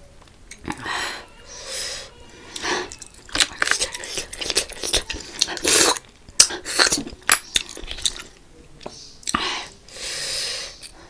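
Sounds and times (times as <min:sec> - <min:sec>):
wet chewing: 0:00.5 - 0:01.0, 0:02.3 - 0:10.0.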